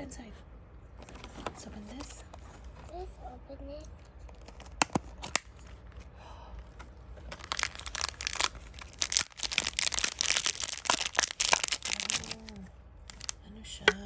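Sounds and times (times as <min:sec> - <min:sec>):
packaging clicks: 0:07.3 - 0:12.5, 0:13.1 - 0:13.4
wrapper crinkling and tearing: 0:07.3 - 0:13.4.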